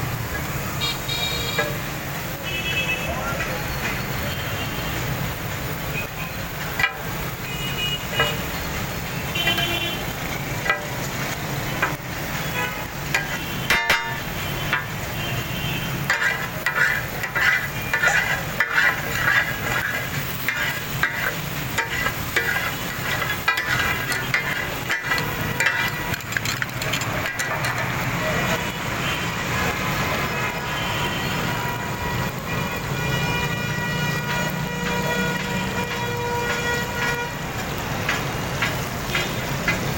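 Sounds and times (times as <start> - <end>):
food sizzling: 0.0 - 39.9
traffic: 0.0 - 39.9
car horns: 0.6 - 3.4, 5.9 - 11.0, 11.7 - 27.8, 30.1 - 37.7
spatulas clanging on griddle: 6.6 - 7.4, 8.1 - 8.6, 10.6 - 12.2, 12.9 - 15.1, 15.9 - 28.2.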